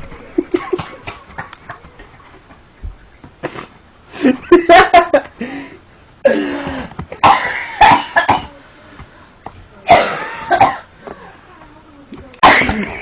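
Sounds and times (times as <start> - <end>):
person coughing: 6.2 - 8.6, 9.9 - 10.9, 12.4 - 13.0.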